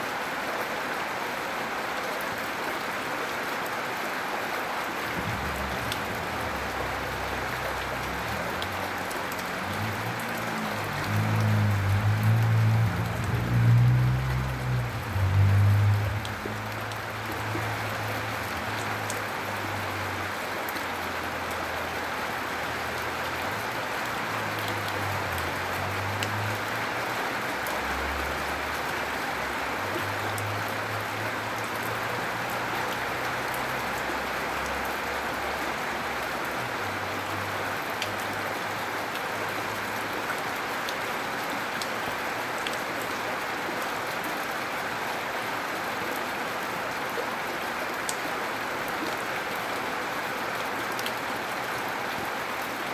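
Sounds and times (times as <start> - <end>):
gentle rain: 0.0 - 52.9
low hum: 5.2 - 8.6.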